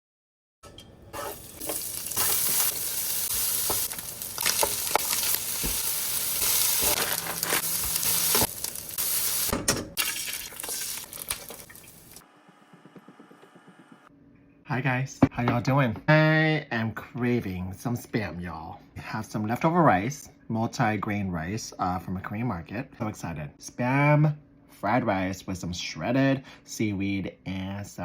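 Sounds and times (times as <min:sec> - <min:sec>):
food sizzling in a hot pan: 0:01.2 - 0:12.2.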